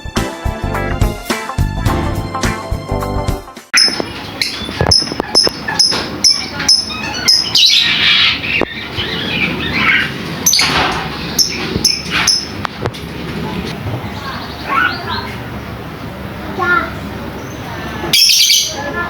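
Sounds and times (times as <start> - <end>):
bird shrill chirps: 3.8 - 12.6, 17.4 - 18.9.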